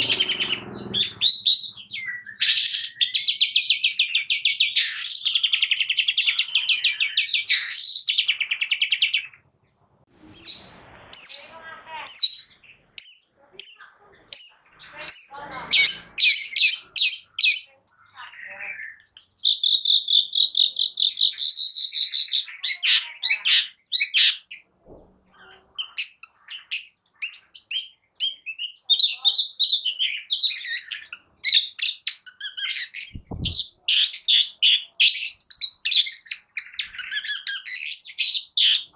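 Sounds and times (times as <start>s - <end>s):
shrike singing: 0.0s - 3.3s
low thump: 33.2s - 33.6s.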